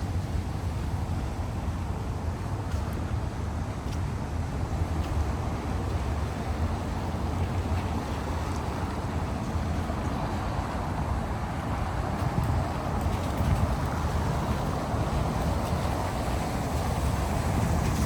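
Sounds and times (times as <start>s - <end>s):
city ambience rumble: 0.0s - 18.0s.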